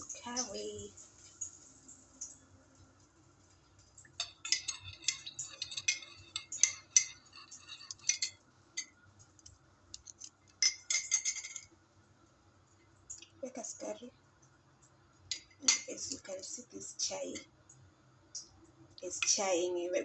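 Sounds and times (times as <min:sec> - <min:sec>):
teaspoon clinking in ceramic mug: 0:04.2 - 0:08.9.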